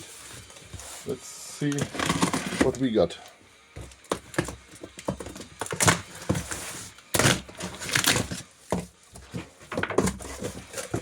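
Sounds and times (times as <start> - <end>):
packaging scraping and crinkling: 0.0 - 3.2, 5.1 - 11.0
packaging rustling: 5.0 - 8.6.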